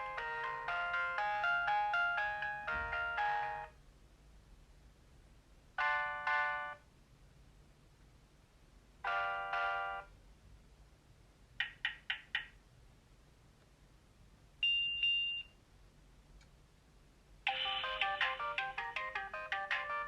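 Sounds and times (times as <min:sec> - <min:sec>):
polyphonic ringtone melody: 0:00.0 - 0:03.7, 0:05.8 - 0:06.8, 0:09.1 - 0:10.0, 0:17.5 - 0:20.0
short beeps: 0:14.6 - 0:15.5.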